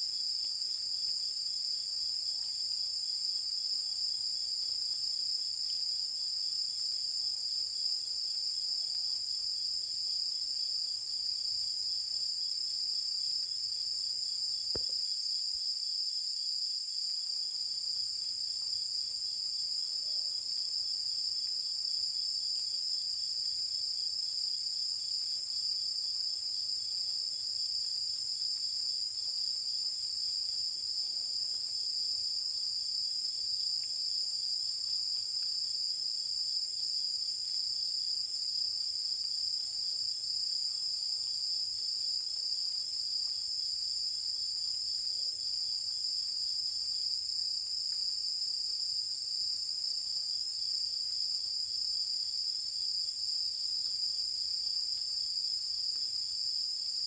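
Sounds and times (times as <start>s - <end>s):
rapid pulsing insect trill: 0.0s - 15.5s
crickets chirping: 0.0s - 57.0s.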